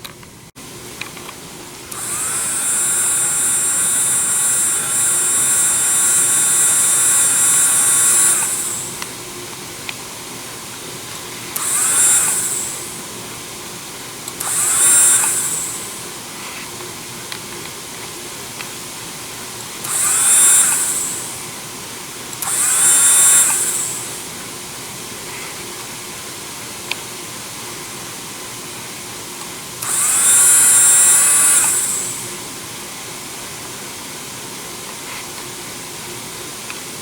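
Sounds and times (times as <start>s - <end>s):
dental drill whining: 1.9s - 9.4s, 11.4s - 13.2s, 14.2s - 16.6s, 19.8s - 24.6s, 29.8s - 32.5s.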